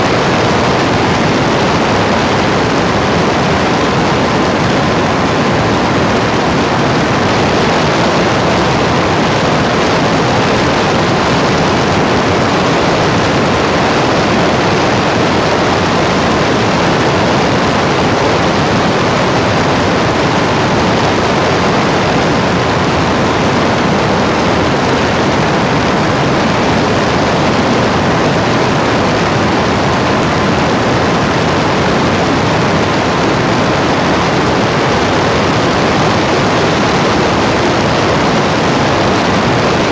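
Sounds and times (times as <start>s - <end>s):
loud steady rushing noise: 0.0s - 39.9s.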